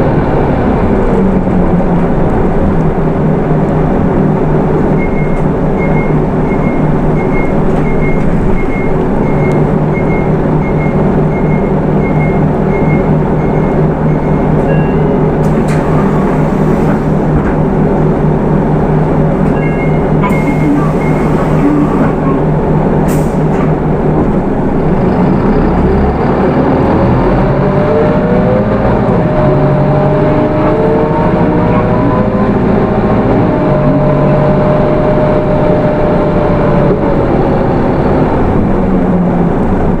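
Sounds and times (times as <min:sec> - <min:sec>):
bus diesel engine: 0:00.0 - 0:40.0
electronic beeps: 0:05.0 - 0:15.2, 0:19.6 - 0:21.9.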